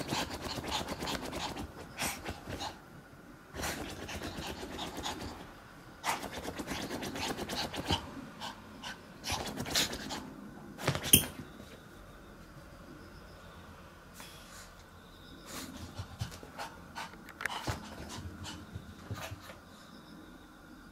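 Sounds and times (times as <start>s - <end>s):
dog panting: 0.0s - 2.8s, 3.6s - 5.5s, 6.1s - 10.4s, 15.5s - 19.6s.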